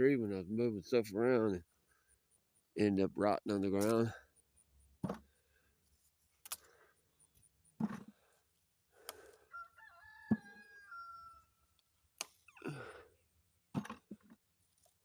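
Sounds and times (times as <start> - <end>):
rooster crowing: 9.5 - 11.6.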